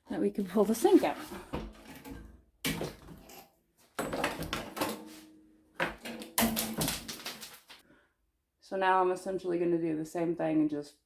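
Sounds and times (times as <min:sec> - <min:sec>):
scraping and rattling: 0:00.4 - 0:07.8
sink knocking and clunking: 0:00.8 - 0:07.8.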